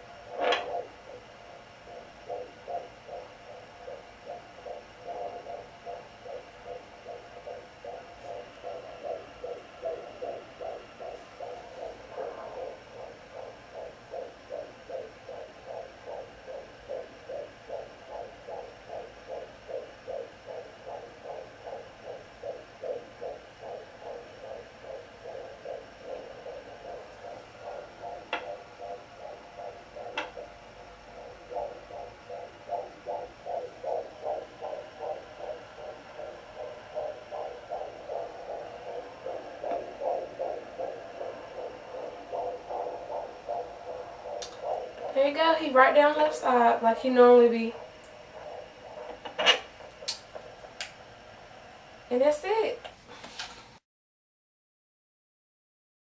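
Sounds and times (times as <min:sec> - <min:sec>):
fetal heartbeat pulsing: 0:00.0 - 0:52.9
steady hum: 0:00.0 - 0:53.8
sharp clicks: 0:44.3 - 0:45.1, 0:48.0 - 0:51.0.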